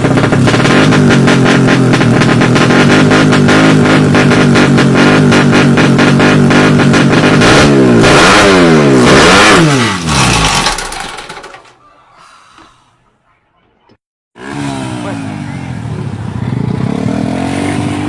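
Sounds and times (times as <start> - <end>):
racing motorcycle engine revving: 0.0 - 11.6, 14.4 - 18.0.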